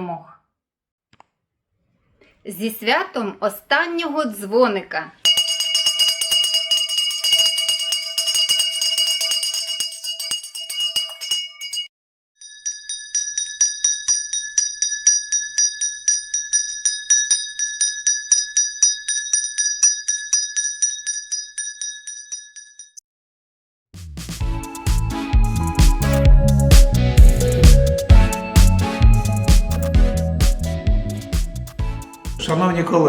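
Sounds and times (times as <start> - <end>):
handbell ringing rapidly: 5.3 - 23.0, 25.5 - 30.7
higher-pitched handbell ringing: 5.3 - 23.0, 25.5 - 30.8.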